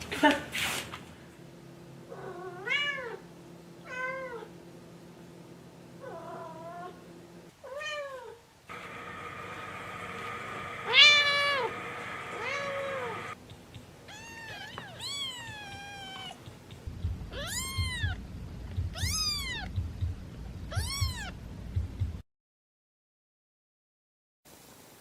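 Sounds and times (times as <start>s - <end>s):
cats meowing: 10.8s - 11.8s, 12.4s - 13.4s, 14.0s - 18.2s, 19.0s - 19.7s, 20.7s - 21.4s
low pulsing rumble: 16.9s - 22.2s.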